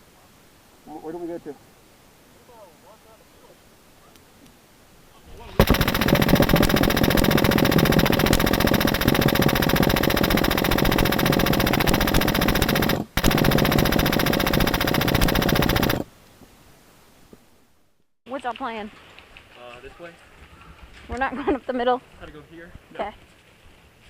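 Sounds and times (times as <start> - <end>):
airsoft machine gun firing full-auto: 5.6 - 16.1.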